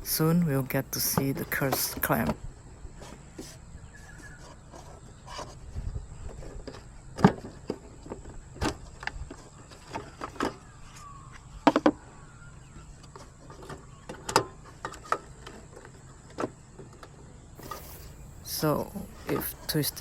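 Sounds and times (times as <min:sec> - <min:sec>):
plastic clicks and knocks: 0:11.6 - 0:12.0.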